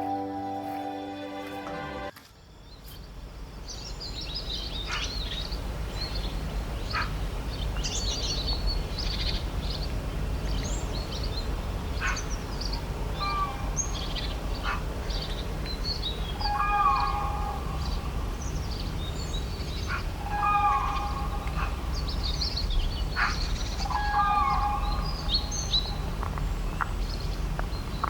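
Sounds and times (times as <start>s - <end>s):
small birds chirping: 2.5s - 28.0s
low outdoor rumble: 3.1s - 28.0s
long held bird call: 15.9s - 26.1s.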